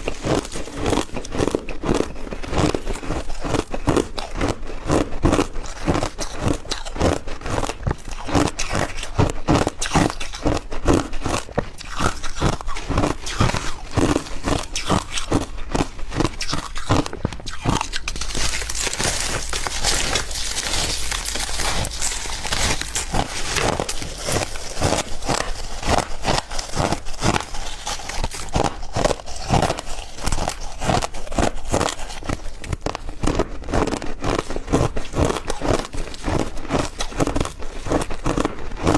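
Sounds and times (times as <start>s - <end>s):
ice being chewed: 0.0s - 38.9s.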